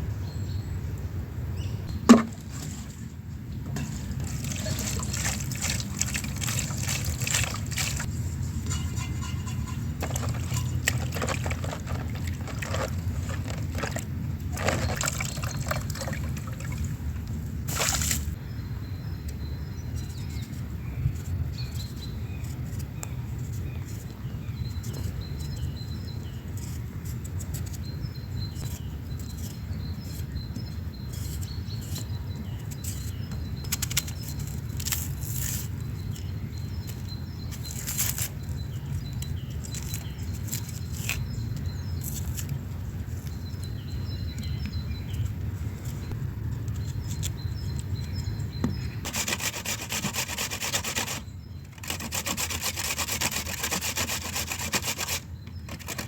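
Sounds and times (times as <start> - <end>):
steady low rumble: 0.0 - 15.1
small birds chirping: 0.0 - 56.0
harsh continuous scraping: 2.1 - 16.8, 20.0 - 56.0.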